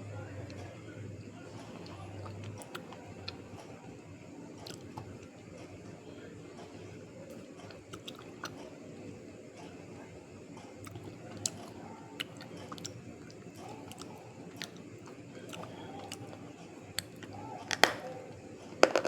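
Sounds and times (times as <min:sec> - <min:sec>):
person chewing something crunchy: 0:01.6 - 0:03.5, 0:04.6 - 0:05.2, 0:07.3 - 0:08.6, 0:10.8 - 0:18.2.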